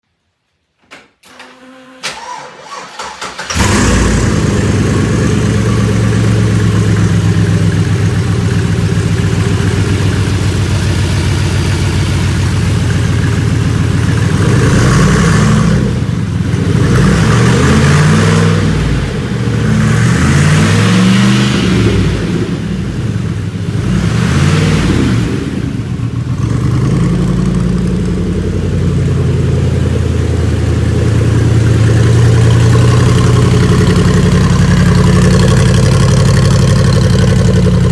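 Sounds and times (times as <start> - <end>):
starter cranking engine: 1.3 - 8.6
engine revving: 2.3 - 37.9
loud lumpy engine idle: 3.5 - 18.0, 25.6 - 37.9.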